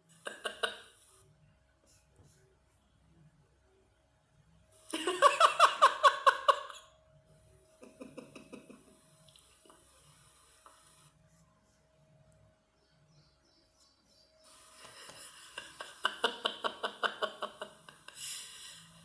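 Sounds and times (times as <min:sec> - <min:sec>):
woman laughing: 0:00.2 - 0:00.8, 0:05.0 - 0:06.8, 0:07.8 - 0:09.0, 0:15.1 - 0:18.2.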